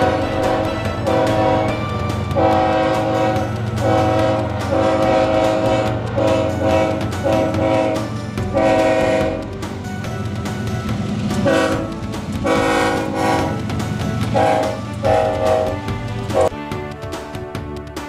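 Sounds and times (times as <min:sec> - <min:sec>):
locomotive horn blasts: 0:00.0 - 0:09.5, 0:11.4 - 0:13.7, 0:14.3 - 0:16.6
diesel engines rumbling: 0:00.0 - 0:16.5.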